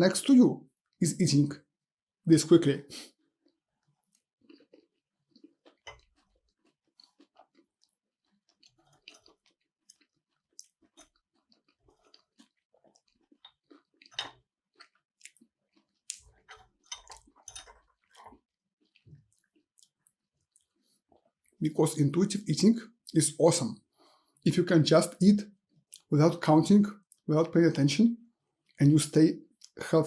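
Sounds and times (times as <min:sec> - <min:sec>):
chewing and eating: 0:03.1 - 0:21.7, 0:25.4 - 0:26.1.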